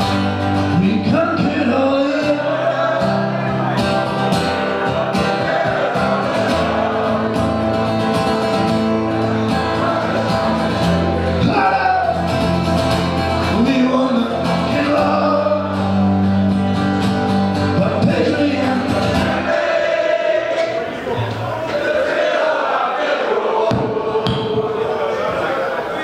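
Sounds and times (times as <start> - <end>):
acoustic guitar: 0.0 - 22.6
person singing: 13.3 - 19.7.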